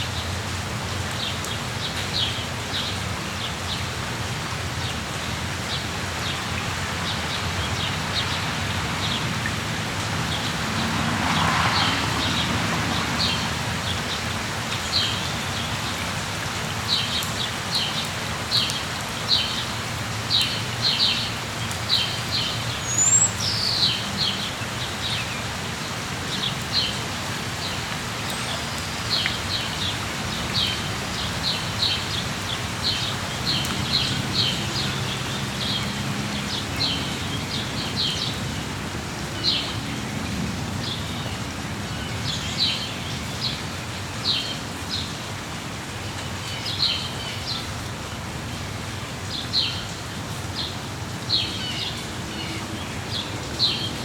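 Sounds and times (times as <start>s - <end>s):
steady rain: 0.0s - 54.0s
small birds chirping: 20.3s - 25.4s.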